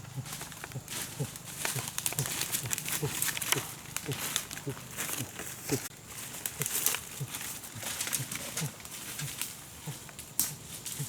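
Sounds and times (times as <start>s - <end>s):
animal low calls: 0.0s - 5.9s
rustling: 0.0s - 11.0s
crackling clicks: 7.9s - 11.0s.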